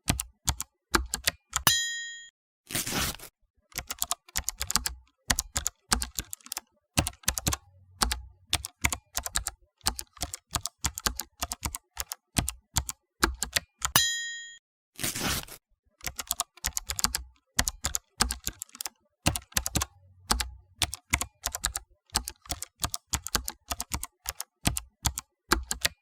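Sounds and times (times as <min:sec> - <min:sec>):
typewriter bell dinging: 0:01.7 - 0:02.3, 0:14.0 - 0:14.6.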